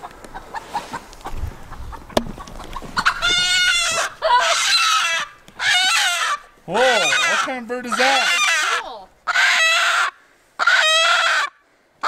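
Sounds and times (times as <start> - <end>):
faint rustling and clicks: 0.0 - 4.3
chicken squawking: 0.4 - 11.6.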